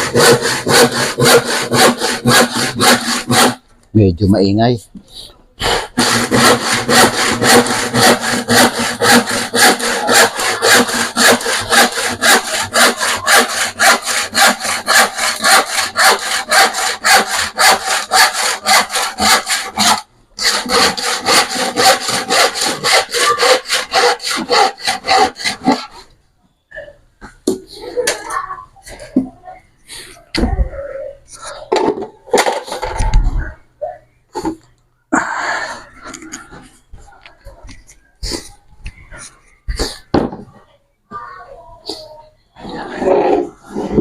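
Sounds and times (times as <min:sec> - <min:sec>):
hand saw cutting plywood: 0:00.0 - 0:03.6, 0:05.6 - 0:26.1.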